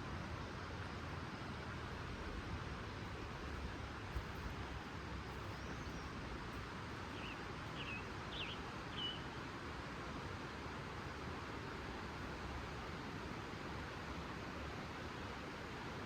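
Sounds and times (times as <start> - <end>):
creek water rushing: 0.0 - 16.0
small bird chirping: 7.2 - 9.2.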